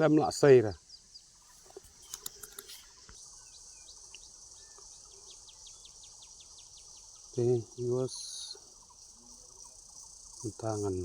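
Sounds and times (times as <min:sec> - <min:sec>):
insects chirping: 0:00.0 - 0:11.0
steady high hiss: 0:00.0 - 0:11.0
faint clicks: 0:01.7 - 0:03.2.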